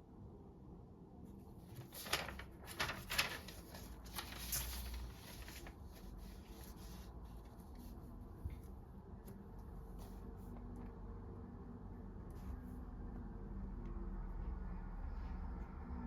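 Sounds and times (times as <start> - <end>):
low steady hum: 0.0 - 16.0
paper rustling: 1.5 - 11.0.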